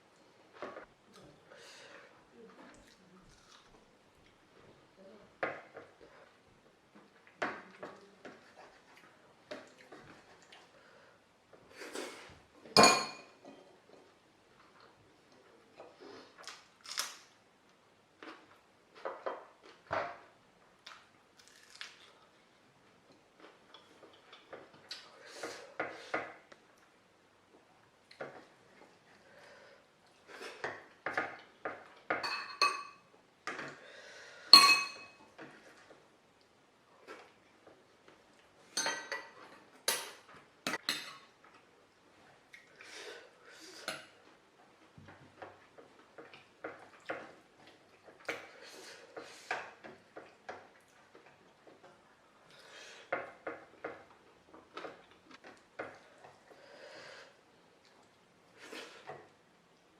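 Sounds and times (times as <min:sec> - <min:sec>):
chewing and crunching food: 0:02.5 - 0:04.7, 0:20.8 - 0:29.2, 0:41.4 - 0:43.4, 0:44.1 - 0:56.6, 0:57.6 - 0:59.9
cutlery clinking against dish: 0:12.8 - 0:13.6, 0:32.1 - 0:33.0, 0:34.6 - 0:35.2, 0:38.8 - 0:41.3.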